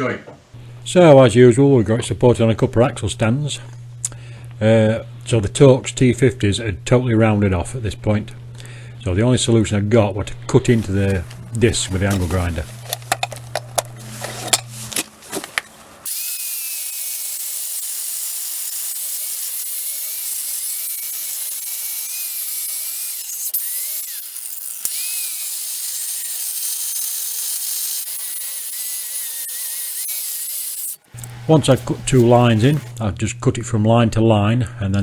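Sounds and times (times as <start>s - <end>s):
clicks and knocks: 10.7s - 15.9s
angle grinder cutting metal: 10.7s - 32.9s.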